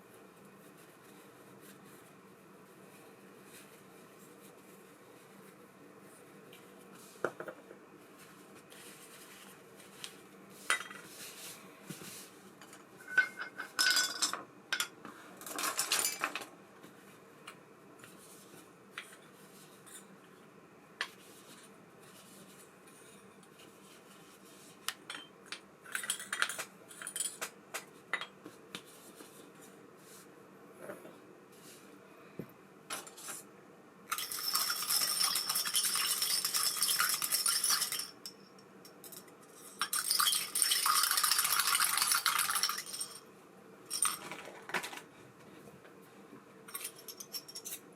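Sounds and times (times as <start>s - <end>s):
small metal parts clinking: 34.1s - 38.4s, 43.9s - 44.5s.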